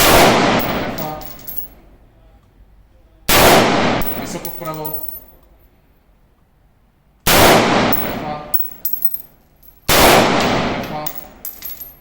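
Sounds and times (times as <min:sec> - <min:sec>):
rifle shots with echo: 0:00.0 - 0:01.0, 0:03.3 - 0:04.4, 0:07.3 - 0:08.3, 0:09.9 - 0:11.2.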